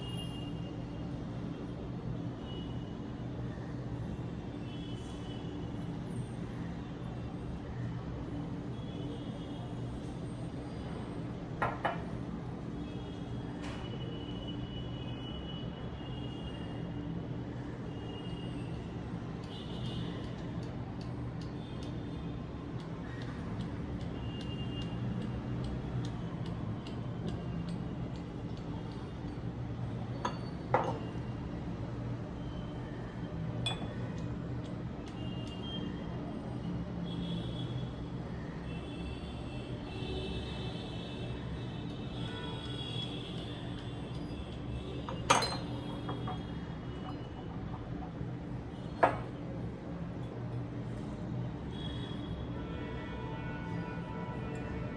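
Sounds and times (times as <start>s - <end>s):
crockery clinking: 30.2s - 31.1s, 33.7s - 34.0s, 45.1s - 47.4s, 49.0s - 49.3s.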